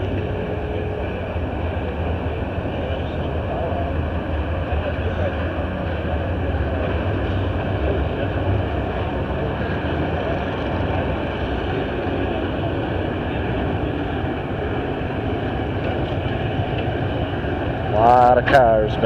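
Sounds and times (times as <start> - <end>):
low rumble of vehicle engines: 0.0 - 19.0.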